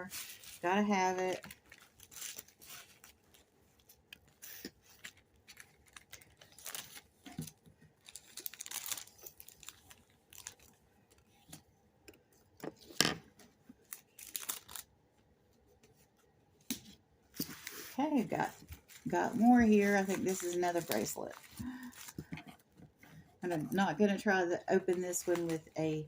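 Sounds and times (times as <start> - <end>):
packaging rustling and tearing: 0.0 - 11.6, 13.8 - 14.9, 17.4 - 22.4.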